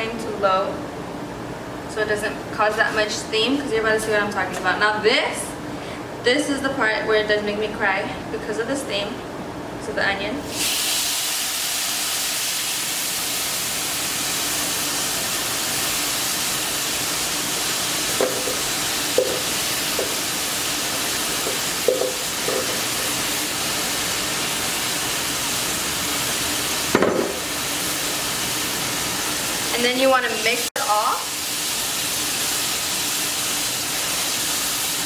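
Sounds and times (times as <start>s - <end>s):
sauce sizzling in a pan: 10.5s - 35.0s
stirring sounds: 17.7s - 23.6s
knock: 18.2s - 18.6s, 26.9s - 27.4s.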